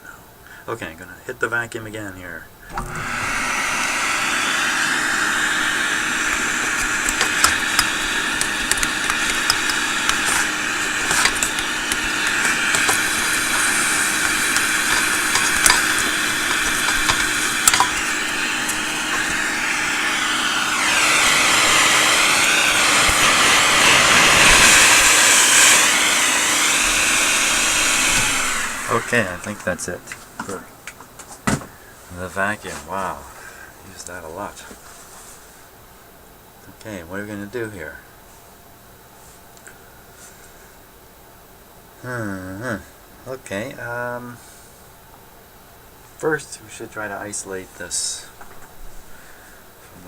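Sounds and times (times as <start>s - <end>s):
vacuum cleaner running: 2.6s - 30.8s.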